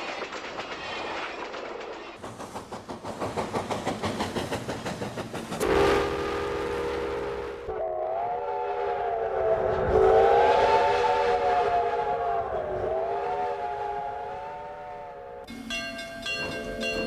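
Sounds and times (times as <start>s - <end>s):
train whistle: 5.6s - 15.5s.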